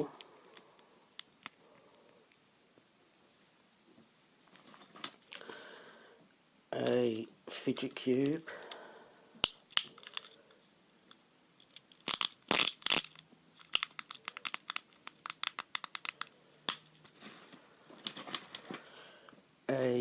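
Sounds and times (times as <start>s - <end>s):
sharp plastic clicks: 11.6s - 16.8s
handling noises: 13.0s - 19.0s.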